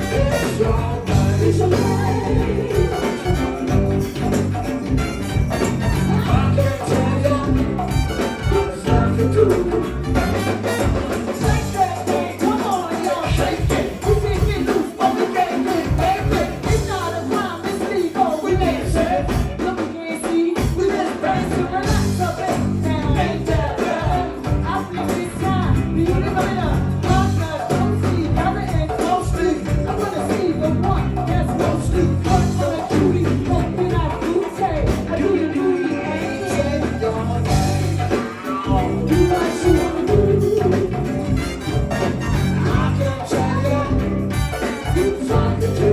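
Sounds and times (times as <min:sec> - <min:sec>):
person singing: 0:00.0 - 0:04.0, 0:05.8 - 0:45.9
bass: 0:00.0 - 0:19.8, 0:20.6 - 0:45.9
percussion groove: 0:00.0 - 0:45.9.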